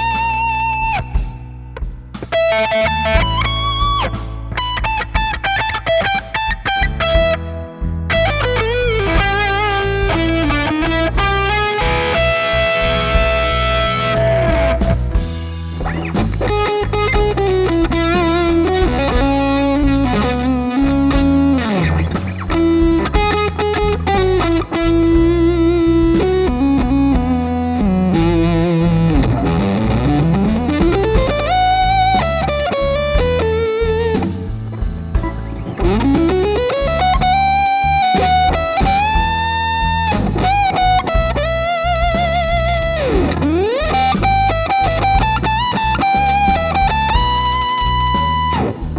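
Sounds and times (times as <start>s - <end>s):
blues backing track: 0.0s - 48.9s
electric guitar blues lead: 0.0s - 48.9s
steady drum beat: 0.0s - 48.9s.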